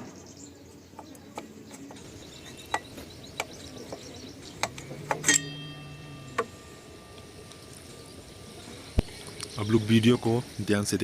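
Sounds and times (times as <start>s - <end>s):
metal tools clinking: 4.8s - 8.0s
low hum: 4.8s - 9.6s.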